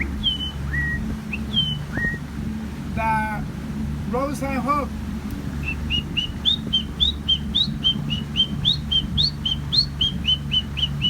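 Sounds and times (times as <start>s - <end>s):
man whistling bird call: 0.0s - 2.2s, 5.6s - 11.0s.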